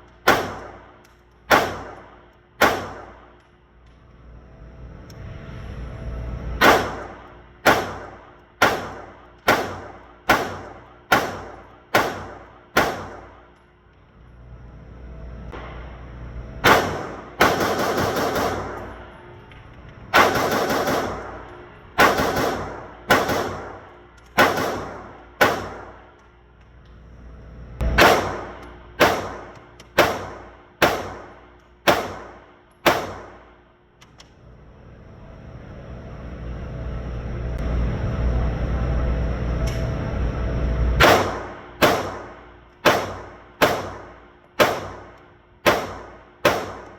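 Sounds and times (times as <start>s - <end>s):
handgun shots with ringing echo: 0.2s - 0.9s, 1.5s - 3.2s, 6.6s - 13.3s, 24.4s - 25.9s, 27.9s - 33.5s, 41.0s - 46.9s.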